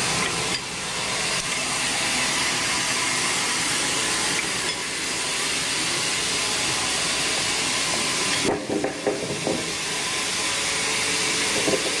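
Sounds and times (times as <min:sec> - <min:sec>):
band saw cutting log: 0:00.0 - 0:12.0
clatter of knocks: 0:08.4 - 0:09.7.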